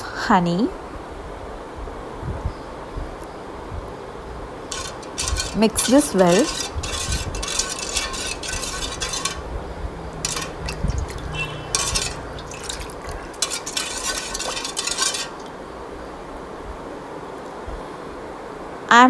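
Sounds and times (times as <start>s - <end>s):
utensil scraping a pan: 4.7s - 16.0s.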